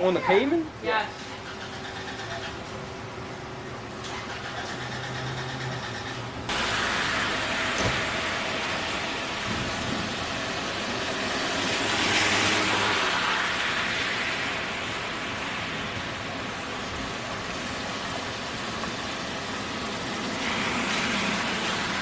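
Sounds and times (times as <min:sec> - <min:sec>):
vehicle passing: 0:04.2 - 0:22.0
steady rain hiss: 0:06.5 - 0:22.0.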